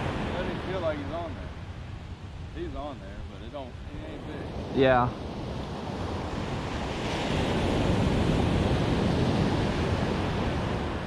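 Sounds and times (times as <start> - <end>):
ocean surf washing ashore: 0.0 - 11.0
wind buffeting microphone: 0.0 - 11.0.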